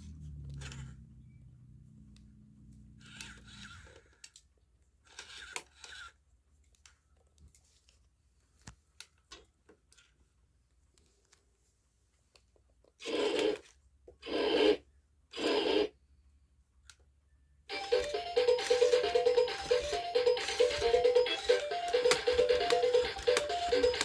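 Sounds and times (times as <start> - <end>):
toy motor humming: 2.9 - 4.4, 5.0 - 6.2, 13.0 - 16.0, 17.7 - 24.0
plastic mechanism clicks: 21.2 - 24.0.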